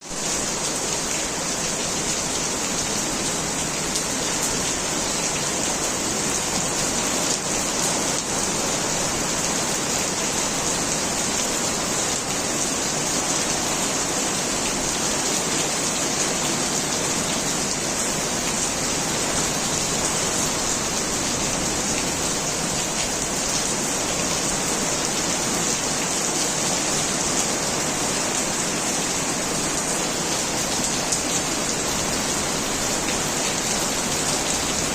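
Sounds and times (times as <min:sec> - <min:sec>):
heavy rain falling: 0:00.0 - 0:34.9.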